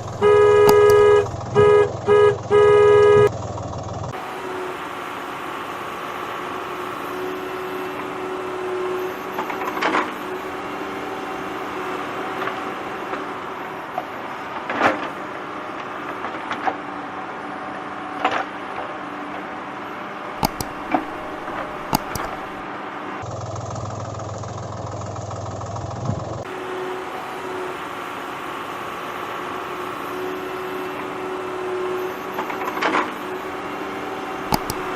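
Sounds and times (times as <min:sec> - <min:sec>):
low engine-like hum: 0:00.0 - 0:34.9
plastic clicks and knocks: 0:20.4 - 0:22.5, 0:34.5 - 0:34.9.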